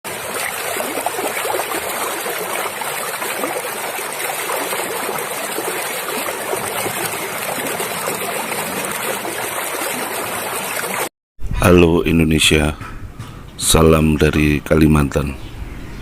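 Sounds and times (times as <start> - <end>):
stream water running over rocks: 0.1 - 11.1.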